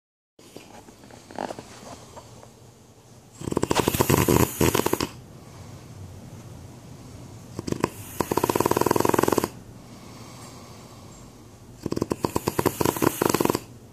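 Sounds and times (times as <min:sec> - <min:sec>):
man snoring loudly: 0:03.4 - 0:05.2, 0:07.6 - 0:09.6, 0:11.8 - 0:13.7.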